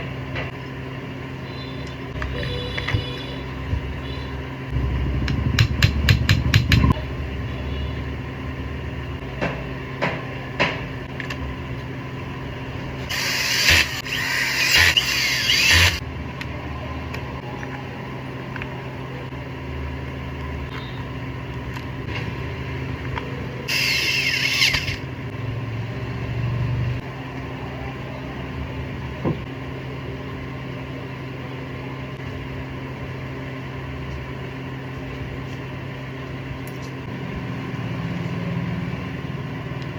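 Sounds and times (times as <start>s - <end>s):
grinder humming: 1.9s - 9.2s, 13.0s - 16.0s, 22.3s - 26.8s
sharp ticks: 4.8s - 7.0s
harsh bright grinding noise: 13.0s - 16.0s, 23.7s - 25.3s.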